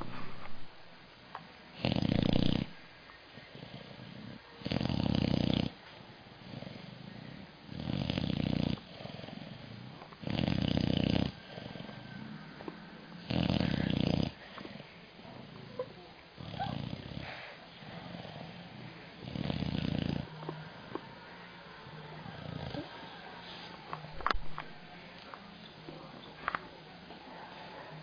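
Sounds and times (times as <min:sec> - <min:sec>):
dog snoring: 0:01.7 - 0:02.8, 0:03.4 - 0:05.8, 0:06.4 - 0:15.8, 0:16.4 - 0:21.0, 0:22.2 - 0:23.0
dog breathing: 0:06.4 - 0:15.7, 0:16.4 - 0:21.0.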